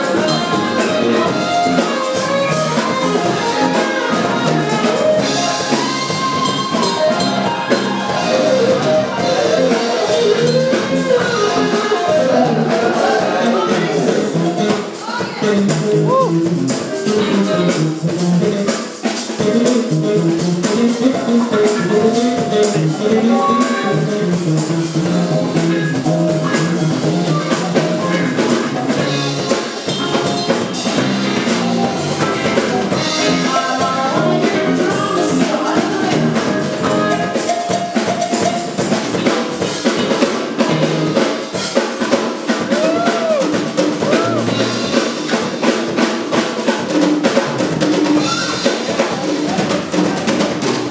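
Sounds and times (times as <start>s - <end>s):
live band playing: 0.0s - 50.9s
sung vocals: 9.1s - 16.4s, 32.6s - 37.3s.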